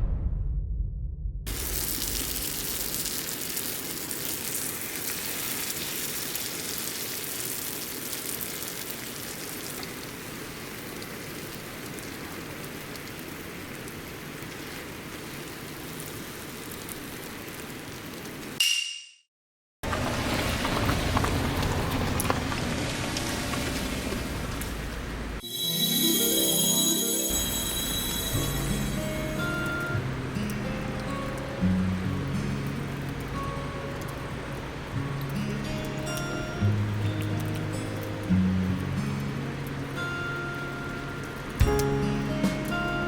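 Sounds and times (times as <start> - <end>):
food sizzling in a frying pan: 1.5 - 13.0, 25.5 - 30.7.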